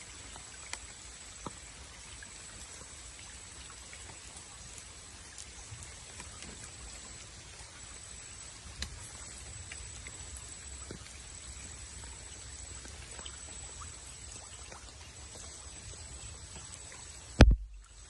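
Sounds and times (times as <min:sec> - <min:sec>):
hiss of water or rain: 0:00.0 - 0:18.0
small ticks and drips: 0:00.0 - 0:18.0
thin high whine: 0:06.2 - 0:18.0.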